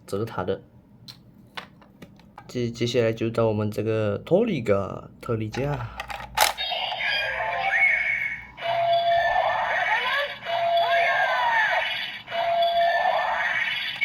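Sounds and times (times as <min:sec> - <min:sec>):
toy speaker electronic music: 0:06.5 - 0:14.0.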